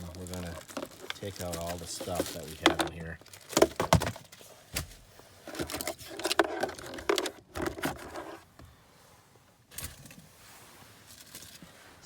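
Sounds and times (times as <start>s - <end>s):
objects knocking and rustling: 0.0s - 8.4s.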